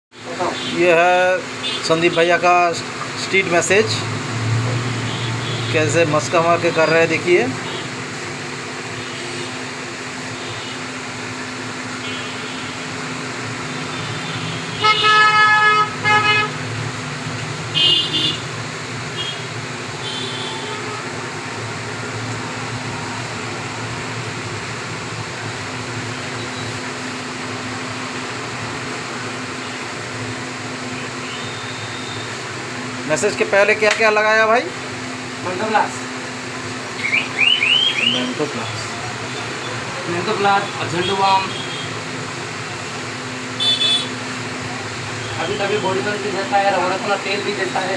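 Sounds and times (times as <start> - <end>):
street traffic noise: 0.1 - 47.9
vehicle horn honking: 1.6 - 2.2, 4.9 - 6.1, 7.6 - 8.0, 8.9 - 9.7, 10.3 - 10.9, 12.0 - 12.8, 13.6 - 16.7, 17.7 - 21.2, 31.2 - 32.4, 40.4 - 42.0, 43.6 - 44.2.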